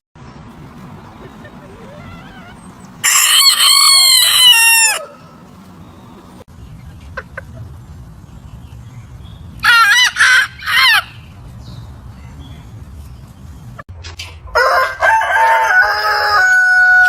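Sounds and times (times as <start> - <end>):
roosters crowing: 0.7 - 6.4, 9.6 - 11.4, 14.4 - 17.0.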